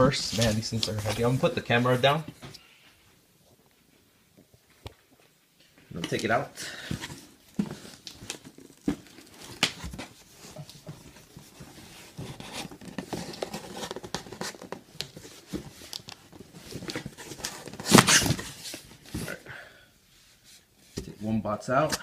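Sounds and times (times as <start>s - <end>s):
cardboard rustling and scraping: 0.0s - 2.4s, 6.8s - 19.4s.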